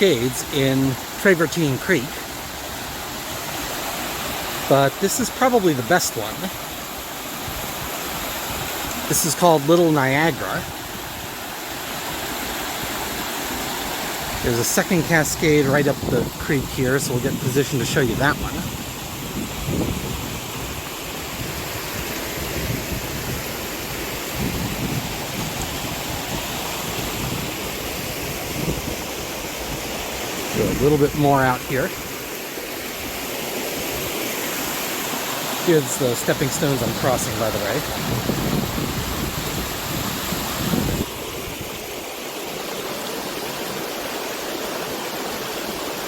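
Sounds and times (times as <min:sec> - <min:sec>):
water pouring over cascade: 0:00.0 - 0:18.4, 0:31.3 - 0:41.1
wind rumble on microphone: 0:15.4 - 0:31.1, 0:37.0 - 0:42.0.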